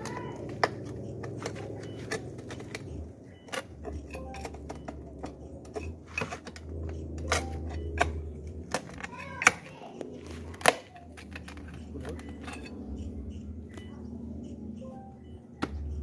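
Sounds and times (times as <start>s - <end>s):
low steady hum: 0.0s - 16.0s
metallic clinks and knocks: 10.9s - 12.8s.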